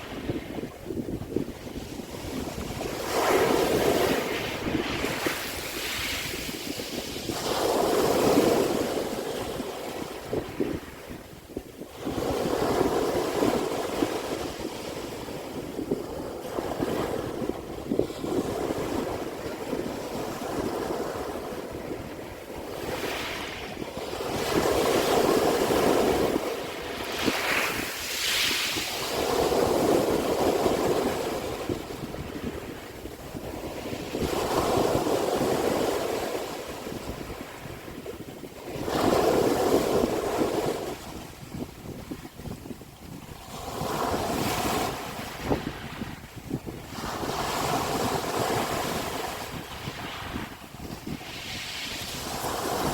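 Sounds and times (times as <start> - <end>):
sea waves breaking on shore: 0.0 - 52.9.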